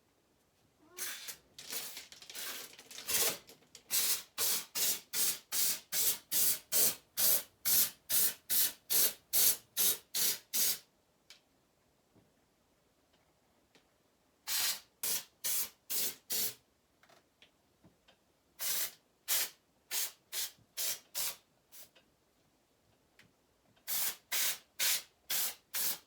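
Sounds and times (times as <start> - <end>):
hissing sprays from a nozzle: 18.6 - 21.9, 23.9 - 26.0.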